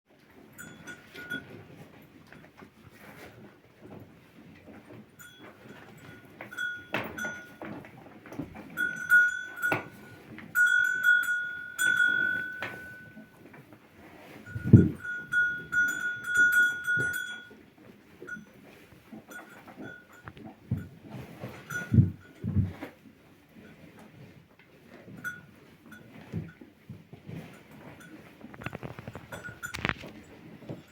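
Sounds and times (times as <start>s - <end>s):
deep low livestock sound: 0.2s - 30.9s
high livestock call: 8.8s - 13.3s, 14.5s - 17.5s.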